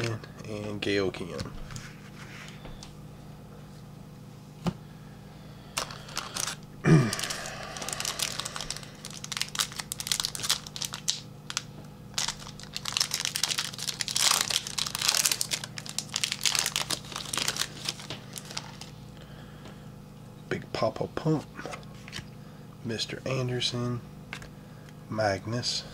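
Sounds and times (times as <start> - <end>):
plastic wrapper crinkling: 5.8 - 19.0.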